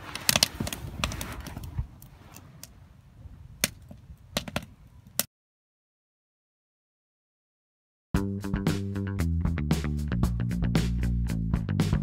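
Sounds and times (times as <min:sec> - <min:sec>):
wood fire crackling: 0:00.0 - 0:05.3.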